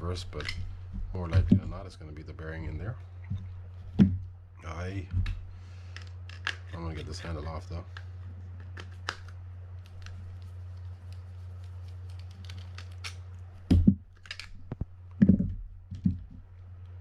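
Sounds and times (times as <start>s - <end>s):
thuds: 3.3s - 4.3s, 13.7s - 14.1s, 15.2s - 16.4s.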